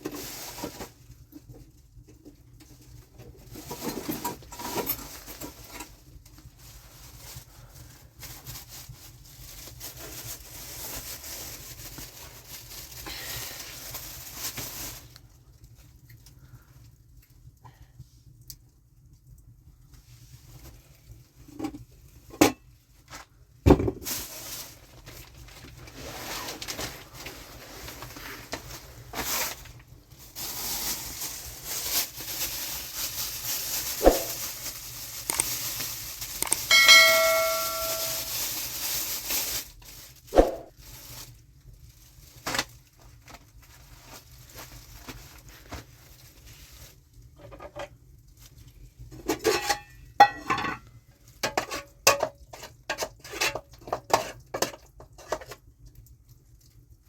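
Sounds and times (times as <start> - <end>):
pots and utensils clinking: 36.4 - 38.6, 49.2 - 50.9
metal pot ringing: 36.6 - 38.4.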